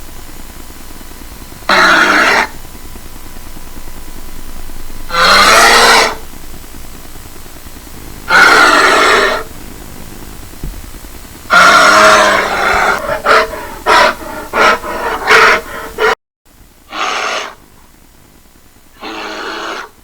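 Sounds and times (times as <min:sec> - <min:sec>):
bear roaring and growling: 0:01.7 - 0:02.6, 0:05.1 - 0:06.2, 0:08.3 - 0:09.5, 0:11.5 - 0:16.2, 0:16.9 - 0:17.6, 0:19.0 - 0:19.9.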